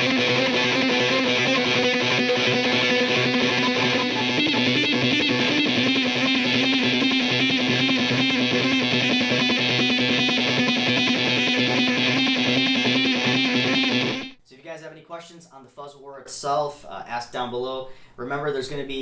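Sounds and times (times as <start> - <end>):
heavily fuzzed electric guitar riffing: 0.0 - 14.4.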